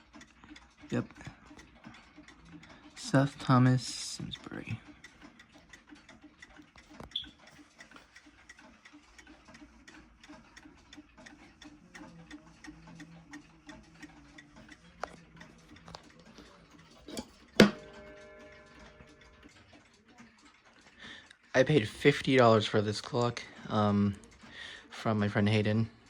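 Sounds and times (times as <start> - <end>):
mantel clock ticking: 0.0 - 26.0
clock chime strike ringing: 17.6 - 19.7.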